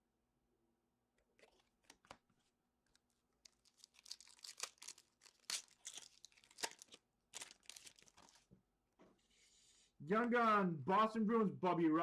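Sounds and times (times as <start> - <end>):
foil wrapper ripping: 3.4 - 8.4
foil wrapper crinkling: 3.4 - 8.5.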